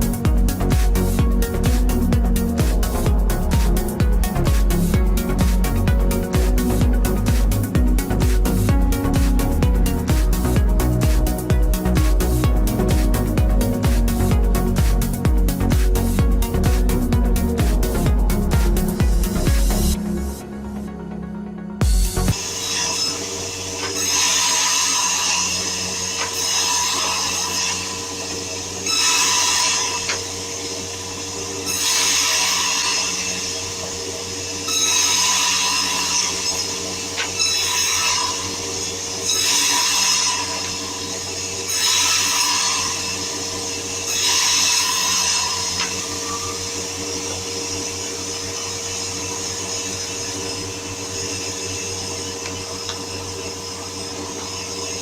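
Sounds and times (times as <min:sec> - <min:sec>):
woodworking machine running: 0:00.0 - 0:20.9, 0:21.8 - 0:55.0
machine cutting into wood: 0:22.3 - 0:55.0.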